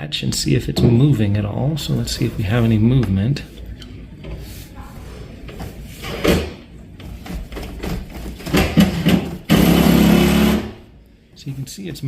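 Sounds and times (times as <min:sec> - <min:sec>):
mechanical buzz: 0:09.5 - 0:10.9.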